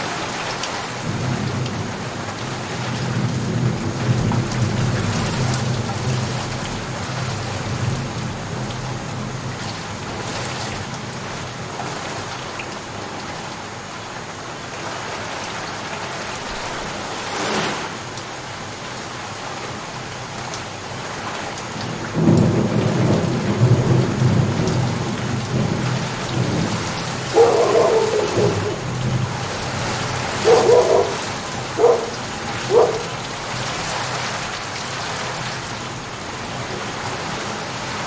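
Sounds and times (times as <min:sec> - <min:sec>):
steady rain falling: 0:00.0 - 0:38.0
thunder rumbling: 0:22.2 - 0:33.3.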